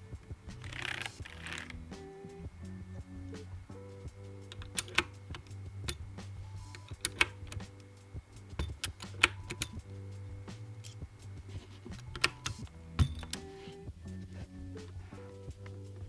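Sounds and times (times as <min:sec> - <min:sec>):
background music with bass: 0:00.0 - 0:16.0
mechanical keyboard keystrokes: 0:04.5 - 0:06.0, 0:06.7 - 0:07.7, 0:08.6 - 0:09.8, 0:12.0 - 0:13.5.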